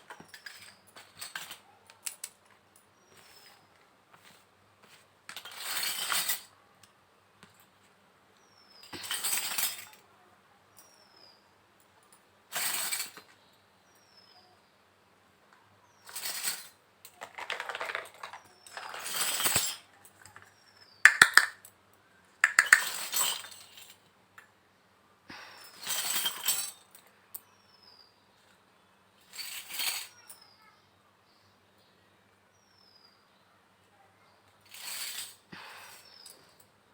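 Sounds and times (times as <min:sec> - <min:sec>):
small hard pieces clinking: 0:08.8 - 0:10.0, 0:16.1 - 0:21.7, 0:22.4 - 0:24.5, 0:25.6 - 0:27.1, 0:29.3 - 0:30.4, 0:34.6 - 0:36.6
packaging rustling: 0:17.2 - 0:19.5.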